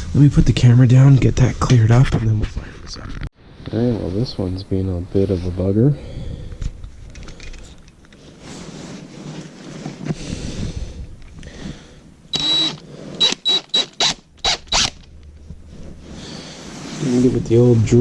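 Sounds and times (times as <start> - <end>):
handling and scraping noises: 6.5 - 10.4, 14.9 - 18.0
small power tool whining: 12.3 - 15.0.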